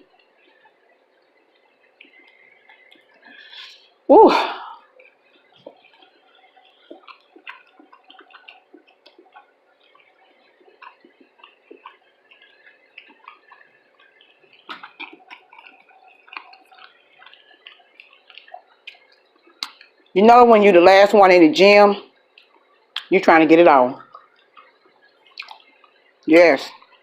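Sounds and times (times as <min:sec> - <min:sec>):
wet chewing: 0:00.0 - 0:20.2, 0:22.1 - 0:23.2, 0:24.0 - 0:27.0
lip smacks: 0:00.1 - 0:04.0, 0:04.8 - 0:20.1, 0:22.1 - 0:23.1, 0:24.0 - 0:27.0
small mouth clicks: 0:04.9 - 0:20.1, 0:22.2 - 0:23.1, 0:24.0 - 0:26.1.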